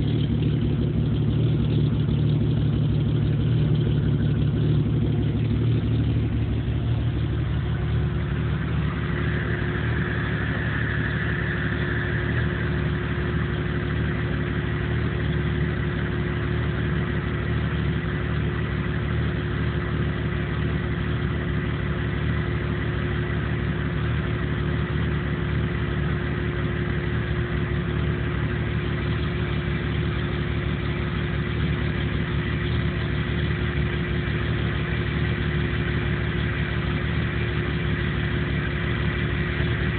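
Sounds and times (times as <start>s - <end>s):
engine idling roughly: 0.0s - 39.9s
faint high whine: 5.4s - 15.9s.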